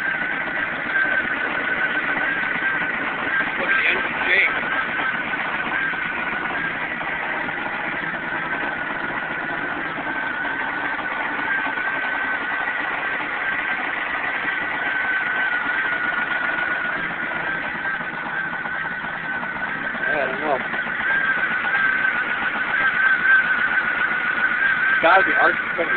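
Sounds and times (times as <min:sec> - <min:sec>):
car engine idling with misfire: 0:00.0 - 0:25.9
steady high whine: 0:00.0 - 0:25.9.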